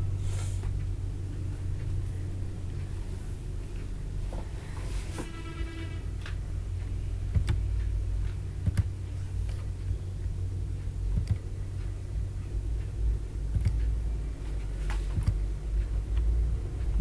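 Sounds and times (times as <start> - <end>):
low rumble: 0.0 - 17.0
sharp clicks: 7.3 - 7.7, 8.6 - 9.7, 11.1 - 11.5, 13.5 - 13.9, 15.1 - 15.4.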